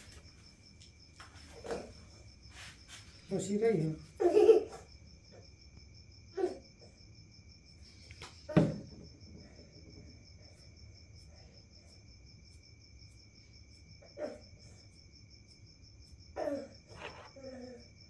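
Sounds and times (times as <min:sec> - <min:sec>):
crickets trilling: 0:00.0 - 0:18.0.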